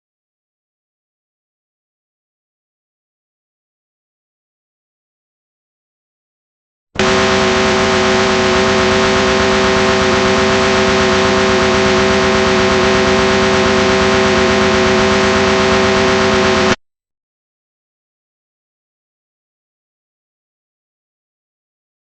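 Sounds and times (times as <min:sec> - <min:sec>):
steady humming tones: 0:07.0 - 0:16.8.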